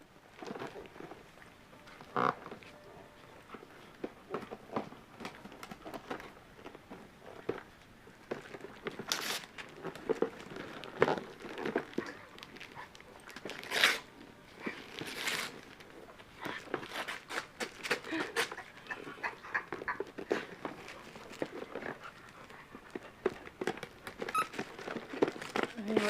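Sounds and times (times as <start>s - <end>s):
wrapping paper crinkling: 3.6s - 26.0s
paper ripping: 9.0s - 12.2s, 13.3s - 14.1s, 14.7s - 15.8s, 16.6s - 18.5s
puppy panting: 18.1s - 25.6s.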